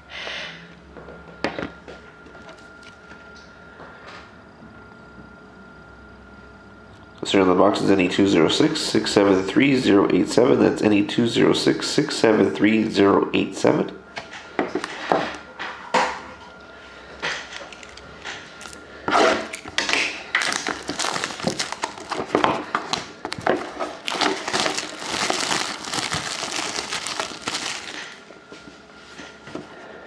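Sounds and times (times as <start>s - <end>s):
plastic wrapping crinkling and tearing: 17.5s - 18.8s, 19.4s - 28.2s.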